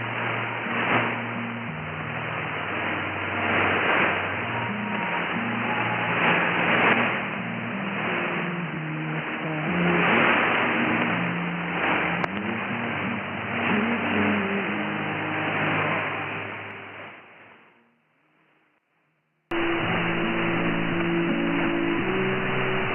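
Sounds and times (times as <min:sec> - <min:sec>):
radio static hiss: 0:00.0 - 0:17.6, 0:19.5 - 0:22.9
faint muffled music: 0:00.0 - 0:18.0.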